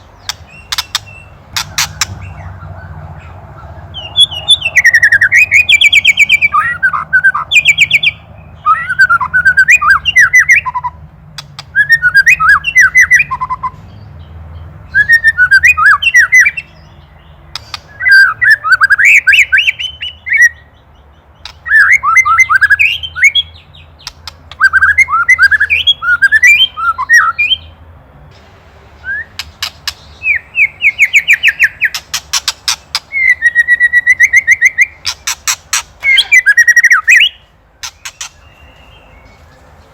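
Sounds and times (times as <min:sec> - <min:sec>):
bird alarm chatter: 0:00.0 - 0:27.8, 0:28.8 - 0:39.9
fast rasping bird ticks: 0:11.3 - 0:11.7, 0:32.0 - 0:33.1.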